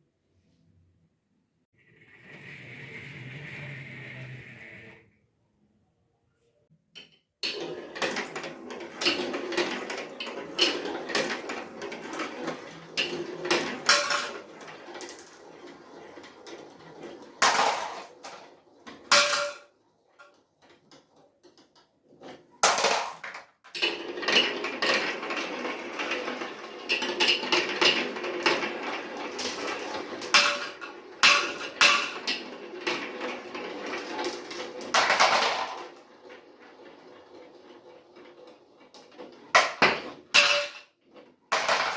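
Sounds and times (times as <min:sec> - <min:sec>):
marbles clattering down plastic run: 0:07.5 - 0:20.4, 0:22.6 - 0:41.9.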